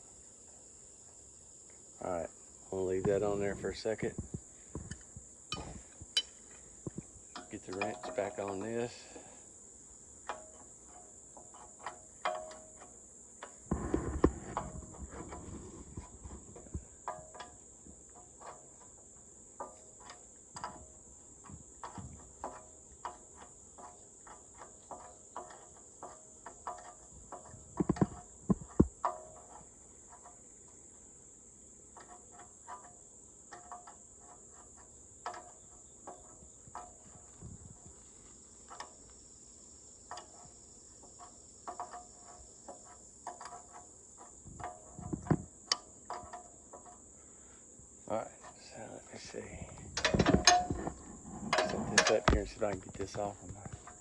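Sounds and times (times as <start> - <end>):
crickets chirping: 0.0 - 54.0
wrench clanking on fittings: 4.9 - 6.4, 7.3 - 9.3, 10.3 - 12.9, 50.0 - 54.0.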